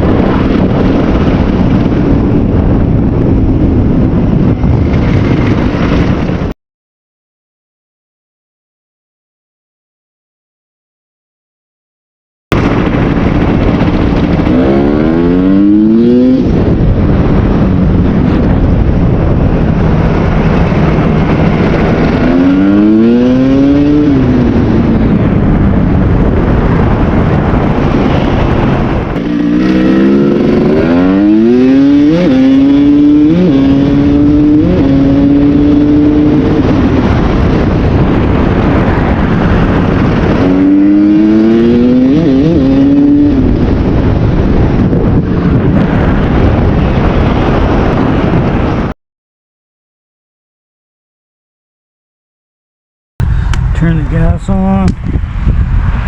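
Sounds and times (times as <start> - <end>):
dirt bike engine revving: 13.3 - 16.6, 20.5 - 24.8, 29.1 - 43.6.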